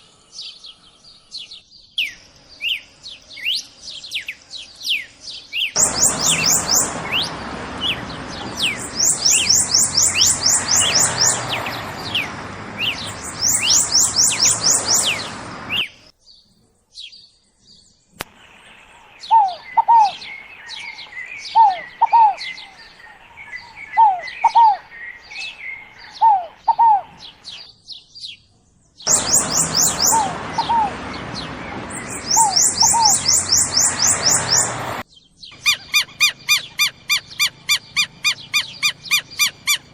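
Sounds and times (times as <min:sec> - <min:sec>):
songbirds singing: 0:00.0 - 0:39.9
background hiss: 0:02.2 - 0:16.1, 0:18.2 - 0:27.6
bird calling paired falling notes: 0:05.8 - 0:16.0, 0:29.1 - 0:35.0.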